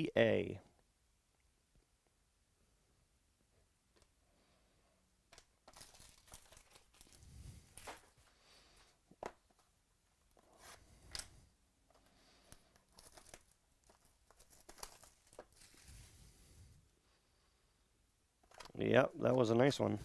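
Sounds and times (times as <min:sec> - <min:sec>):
packaging crinkling and tearing: 0:05.4 - 0:08.3, 0:12.4 - 0:16.0.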